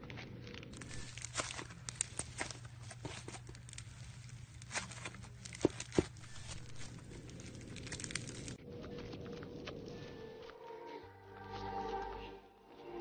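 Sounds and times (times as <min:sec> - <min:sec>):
slime squished by hand: 0:00.2 - 0:08.6.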